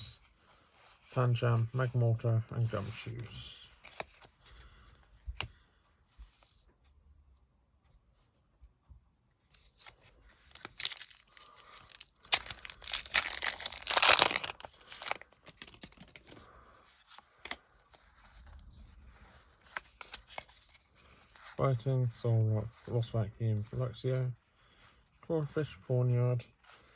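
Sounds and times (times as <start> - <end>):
foil wrapper tearing and crinkling: 10.5 - 16.4.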